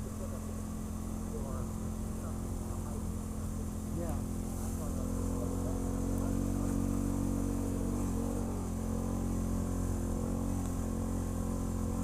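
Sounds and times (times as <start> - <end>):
atv engine running steadily: 0.0 - 12.0.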